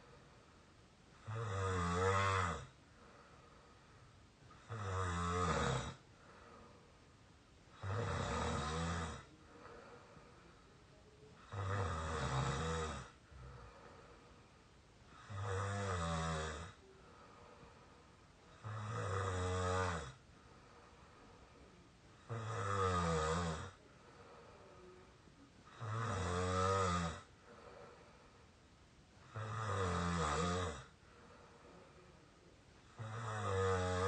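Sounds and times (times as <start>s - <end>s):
person snoring squeakily: 1.2s - 2.7s, 7.8s - 9.3s, 11.4s - 13.2s, 18.6s - 20.2s, 22.3s - 23.8s, 25.7s - 27.3s, 29.2s - 30.9s, 32.9s - 34.0s.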